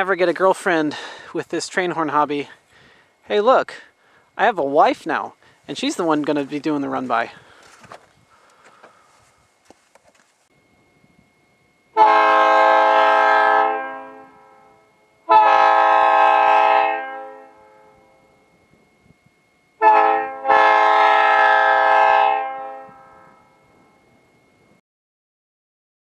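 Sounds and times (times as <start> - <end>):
train air horn chord: 11.9 - 18.4, 19.8 - 23.6.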